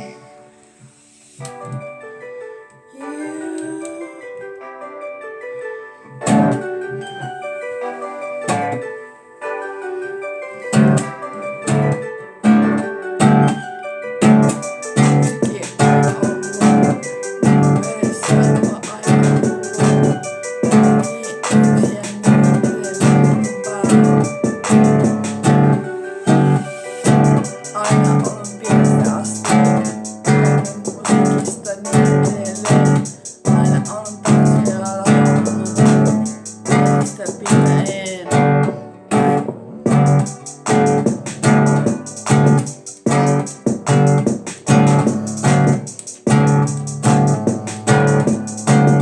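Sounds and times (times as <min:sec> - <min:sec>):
guitar chords ringing: 0:00.0 - 0:49.0.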